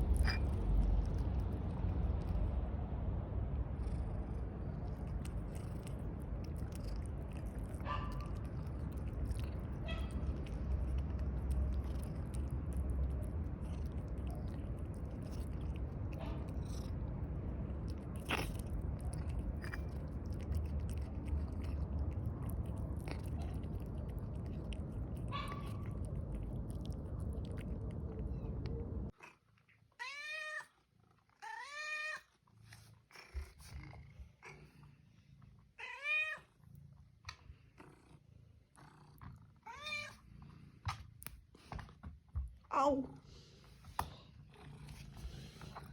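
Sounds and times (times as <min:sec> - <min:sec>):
low rumbling noise: 0:00.0 - 0:29.1
cat meowing: 0:09.8 - 0:10.2, 0:30.0 - 0:30.7, 0:35.8 - 0:36.5, 0:39.6 - 0:40.2.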